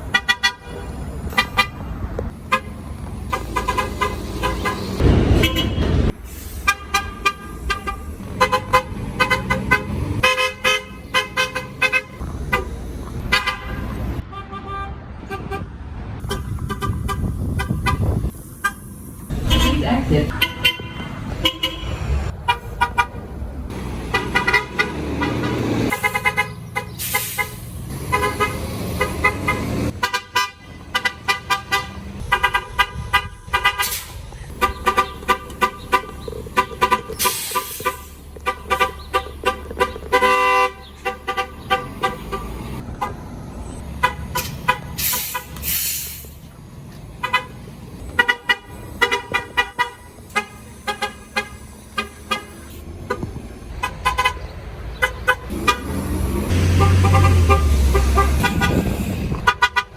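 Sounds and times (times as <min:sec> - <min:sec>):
bus horns tooting: 0:00.0 - 0:46.4, 0:47.0 - 0:59.9
bus engines running: 0:00.0 - 0:59.9
brief hisses: 0:45.0 - 0:46.4.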